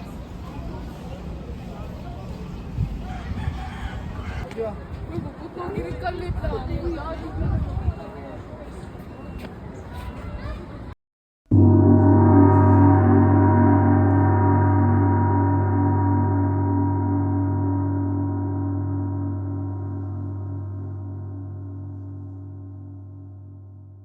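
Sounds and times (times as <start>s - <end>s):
gong ringing: 11.5s - 24.0s.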